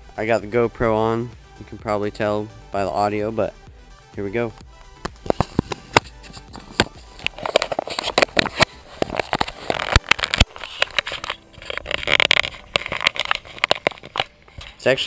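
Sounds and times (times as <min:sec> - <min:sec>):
handling noise on camera microphone: 0:04.9 - 0:15.0.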